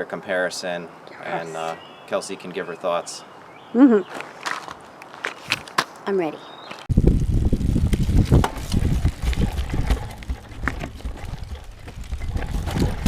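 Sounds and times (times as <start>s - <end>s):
bike knocks and rattles: 4.5s - 6.0s
wind rumble on microphone: 6.9s - 13.0s.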